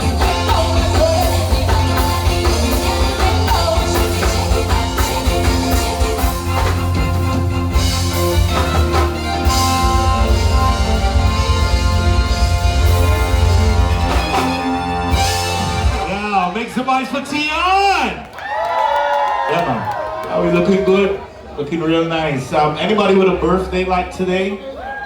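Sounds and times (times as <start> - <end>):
person singing: 0.0 - 6.9
loud music with heavy bass: 0.0 - 16.5.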